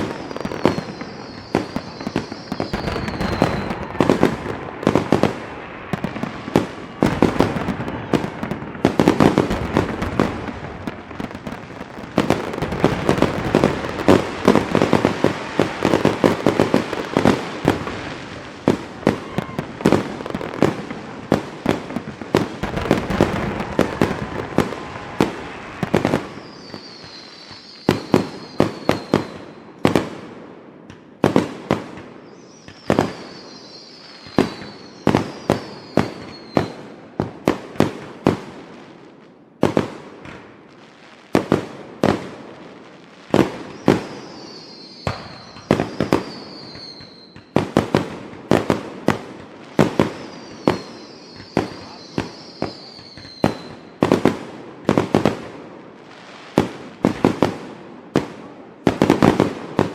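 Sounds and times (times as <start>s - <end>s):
fireworks whistles falling in pitch: 0.0s - 10.4s, 11.2s - 20.8s, 21.6s - 29.8s, 32.1s - 36.9s, 43.4s - 48.0s, 49.8s - 54.3s
fireworks bangs and crackle: 0.0s - 59.9s.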